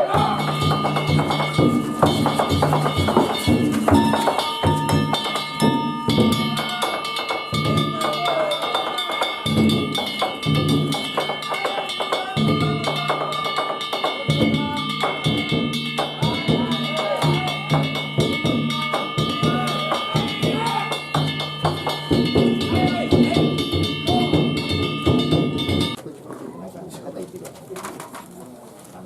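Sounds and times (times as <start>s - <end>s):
metal hand gongs ringing: 0.0s - 26.0s
taiko drum rhythm: 0.0s - 26.0s.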